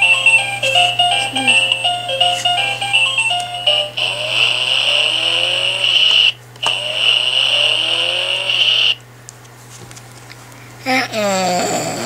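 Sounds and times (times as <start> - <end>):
electronic toy tune: 0.0 - 8.9
toy engine revving sound effect: 3.7 - 9.0.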